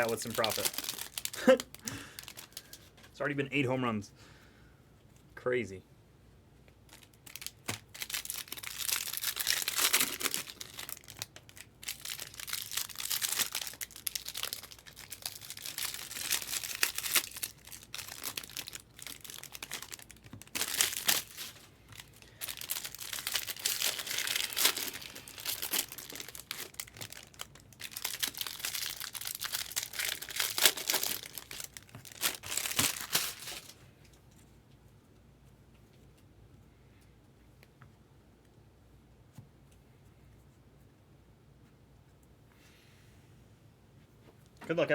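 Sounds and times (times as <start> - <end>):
card pack wrappers tearing and crinkling: 0.0 - 2.9, 6.9 - 33.8.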